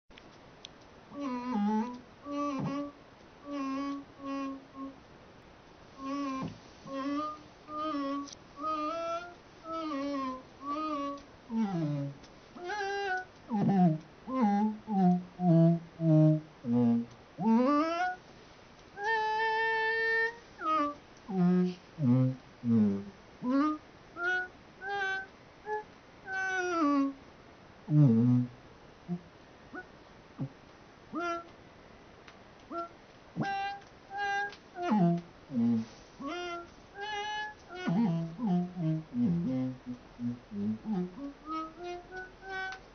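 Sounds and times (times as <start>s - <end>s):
voice-like synthesizer tones: 1.2s - 2.9s, 6.0s - 18.2s, 19.0s - 27.1s, 32.7s - 42.8s.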